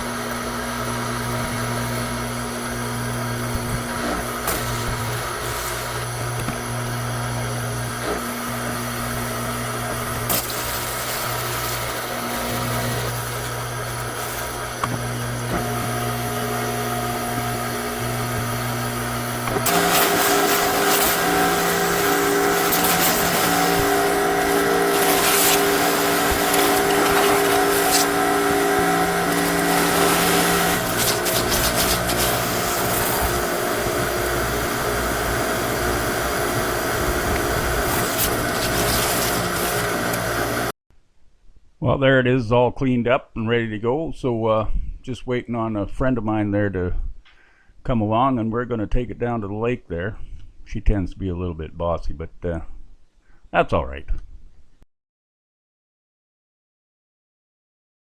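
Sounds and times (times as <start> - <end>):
pressure washer running: 0.0 - 40.7.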